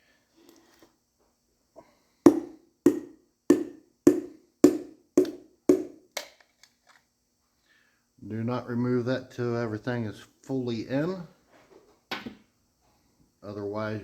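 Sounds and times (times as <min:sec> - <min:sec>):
piston tapped into cylinder: 0:02.3 - 0:06.3.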